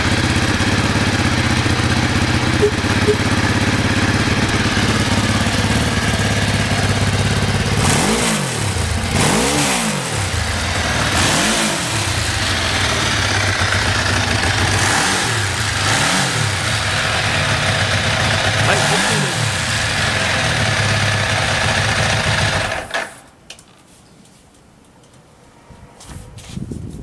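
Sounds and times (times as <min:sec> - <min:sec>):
motorcycle engine idling: 0:00.0 - 0:22.9
motorcycle throttle blips: 0:02.2 - 0:17.4.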